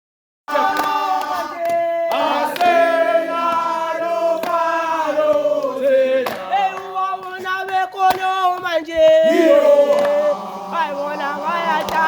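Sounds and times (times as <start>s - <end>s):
sharp claps: 0.5s - 8.8s, 9.9s - 10.2s, 11.8s - 12.0s
group singing a chant: 0.5s - 12.0s.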